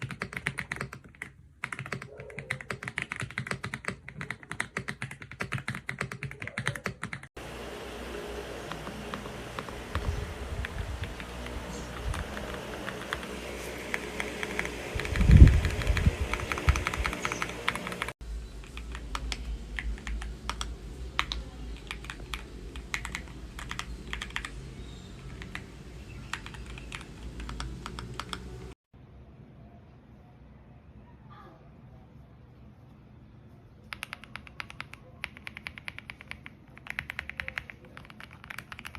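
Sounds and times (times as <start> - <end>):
mechanical keyboard typing: 0.0 - 7.3, 8.7 - 24.6, 25.3 - 25.7, 26.3 - 28.6, 33.9 - 38.9.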